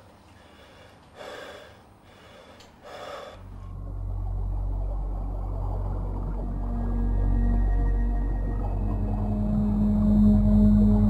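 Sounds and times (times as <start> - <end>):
man breathing hard: 0.3 - 3.7
low droning rumble: 3.4 - 11.0.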